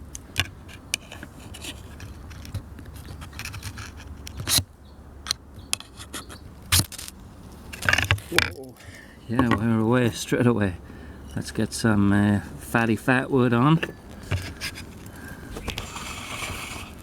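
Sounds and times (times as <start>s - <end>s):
ferro rod scraping: 0.6s - 4.7s, 13.6s - 17.0s.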